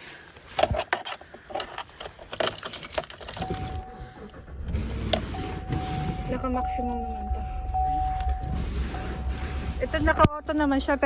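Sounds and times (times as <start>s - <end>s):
car keys jangling: 0.0s - 11.0s
engine starting and rumbling: 2.1s - 11.0s
electronic dashboard tone: 3.4s - 11.0s.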